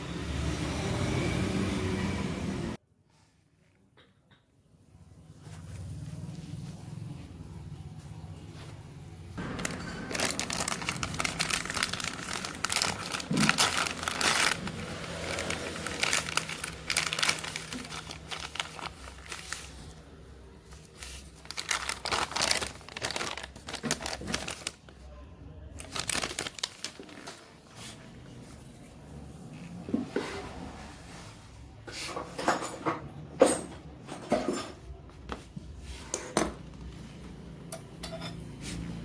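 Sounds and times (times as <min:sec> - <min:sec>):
handling crinkling and scraping: 0:09.4 - 0:31.2.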